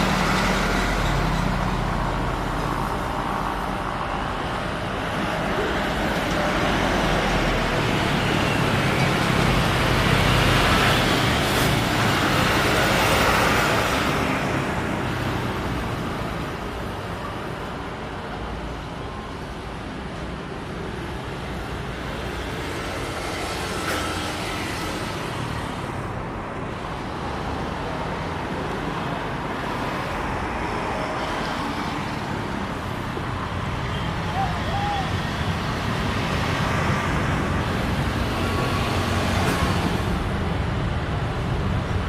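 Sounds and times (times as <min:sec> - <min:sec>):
jet engines of passing airliner: 0:21.7 - 0:42.0.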